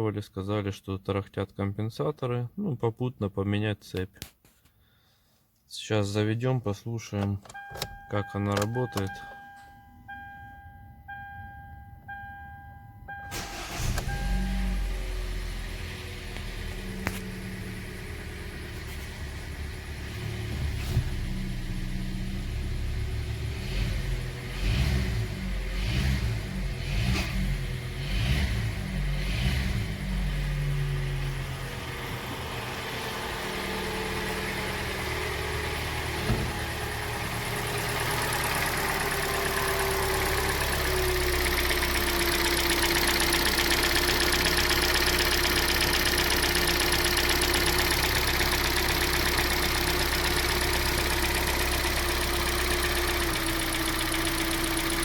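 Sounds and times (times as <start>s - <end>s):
car engine knocking: 34.7s - 55.0s.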